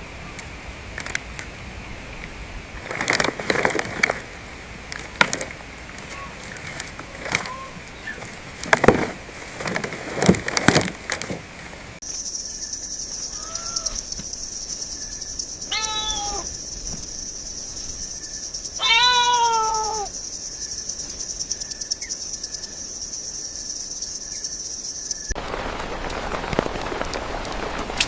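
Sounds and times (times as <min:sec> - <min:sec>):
even hiss like rain: 0:00.0 - 0:28.0
high-pitched background hum: 0:12.0 - 0:25.4
cat meowing: 0:13.4 - 0:14.0, 0:15.7 - 0:16.5, 0:18.8 - 0:20.1.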